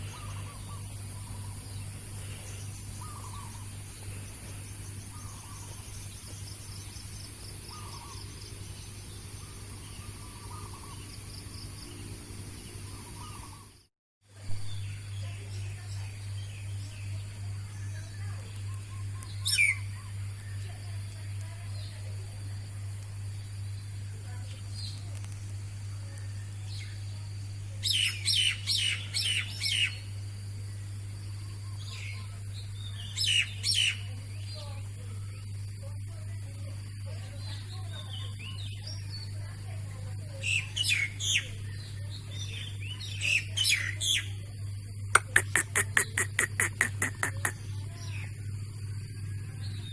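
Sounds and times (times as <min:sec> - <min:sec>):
starling calling: 0:00.0 - 0:06.2, 0:07.5 - 0:08.6, 0:18.2 - 0:20.7, 0:33.0 - 0:34.1, 0:45.1 - 0:48.2
steady low hum: 0:00.0 - 0:49.9
dove cooing: 0:03.0 - 0:03.7
rapid high chirping: 0:45.2 - 0:47.6.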